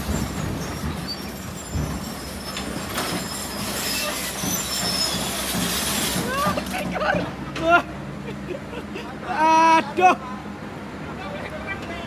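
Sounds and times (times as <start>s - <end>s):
high metallic squeals: 0.0s - 6.8s.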